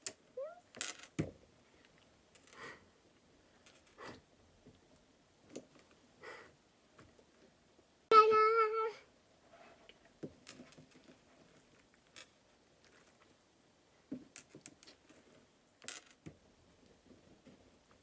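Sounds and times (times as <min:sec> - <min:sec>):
toddler high-pitched vocal sound: 0:00.4 - 0:00.6, 0:08.1 - 0:09.1.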